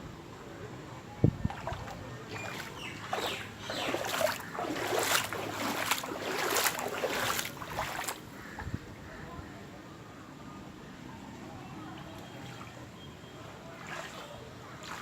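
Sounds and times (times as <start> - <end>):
water splashing and sloshing: 1.3 - 8.8, 13.6 - 15.0.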